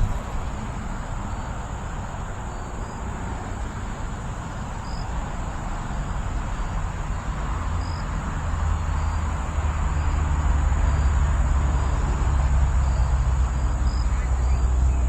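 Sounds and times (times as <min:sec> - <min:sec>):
wind buffeting microphone: 0:00.0 - 0:02.4
high insect drone: 0:00.0 - 0:15.0.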